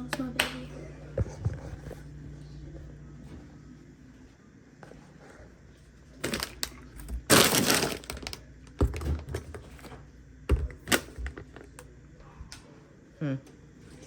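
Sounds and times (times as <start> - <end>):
groceries thudding down: 6.2 - 9.6
groceries knocking and clattering: 6.2 - 11.9.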